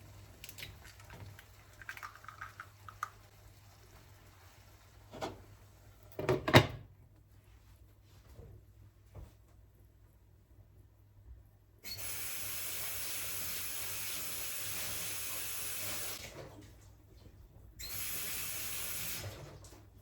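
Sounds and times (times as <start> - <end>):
water running from a tap: 0.0 - 5.2, 12.0 - 16.3, 17.9 - 19.4.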